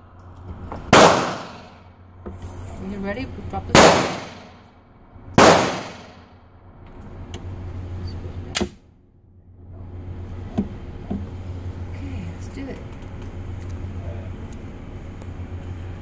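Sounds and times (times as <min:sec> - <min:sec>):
pistol shot: 0:00.9 - 0:01.8, 0:03.7 - 0:04.6, 0:05.4 - 0:06.2.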